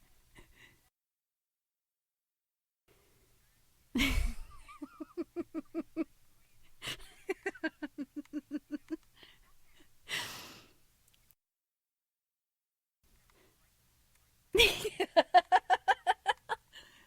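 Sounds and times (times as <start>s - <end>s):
woman laughing: 4.0s - 6.1s, 6.8s - 9.3s, 14.6s - 16.8s.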